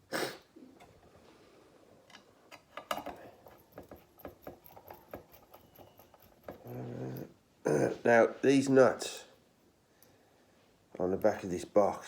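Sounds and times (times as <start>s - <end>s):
small parts clicking and tapping: 2.1s - 7.3s.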